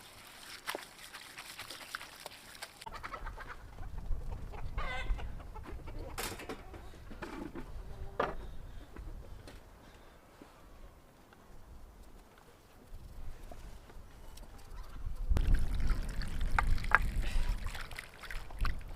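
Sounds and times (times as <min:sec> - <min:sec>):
chickens clucking: 0:02.8 - 0:06.9.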